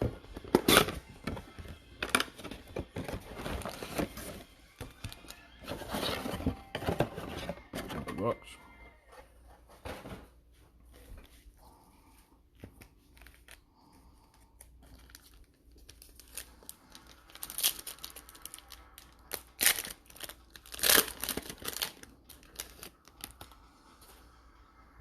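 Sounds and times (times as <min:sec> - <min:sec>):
packaging tearing and crinkling: 0:14.6 - 0:23.6.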